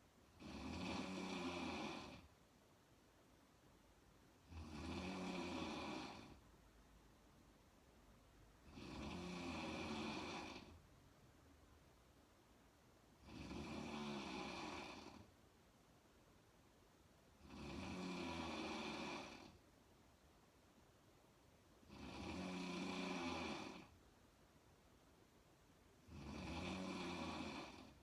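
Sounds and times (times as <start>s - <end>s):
woman snoring: 0.3s - 2.3s, 4.4s - 6.4s, 8.6s - 10.8s, 13.2s - 15.3s, 17.4s - 19.6s, 21.8s - 24.0s, 26.0s - 28.0s.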